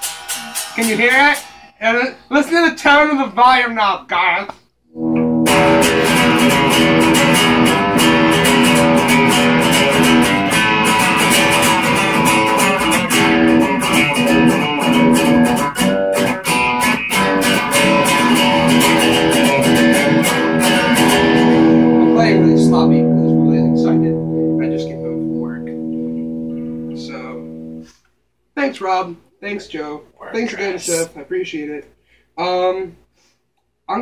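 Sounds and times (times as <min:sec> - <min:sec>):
electric guitar picked notes and chords: 0:04.9 - 0:27.9.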